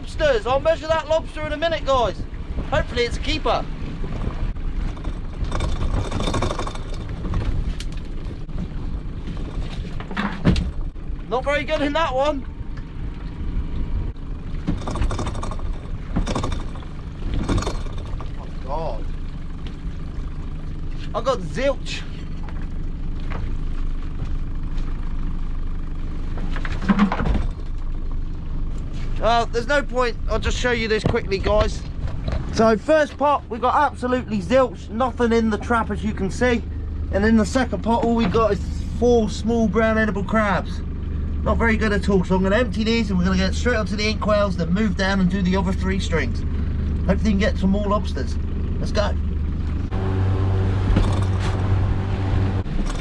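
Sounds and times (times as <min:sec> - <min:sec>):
boat engine and hauling gear: 0:00.0 - 0:53.0
knock and rattle: 0:04.8 - 0:10.9, 0:14.6 - 0:18.6, 0:26.4 - 0:27.8, 0:30.9 - 0:32.5.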